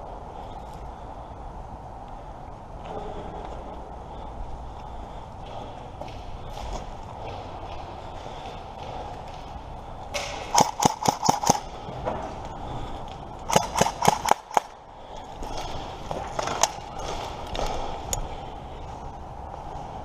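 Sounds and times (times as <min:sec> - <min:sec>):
airsoft guns firing: 0:10.1 - 0:11.7, 0:13.5 - 0:14.8.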